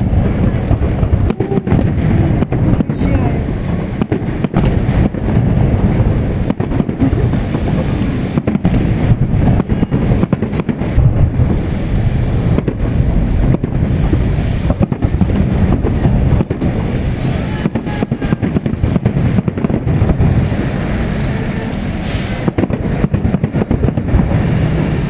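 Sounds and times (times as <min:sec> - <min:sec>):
fireworks rumble: 0:00.0 - 0:25.0
wind buffeting microphone: 0:00.0 - 0:25.0.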